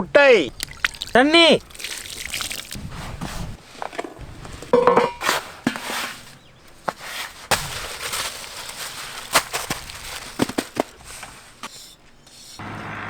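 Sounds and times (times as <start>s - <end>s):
kitchen utensils knocking and clicking: 4.6s - 6.0s.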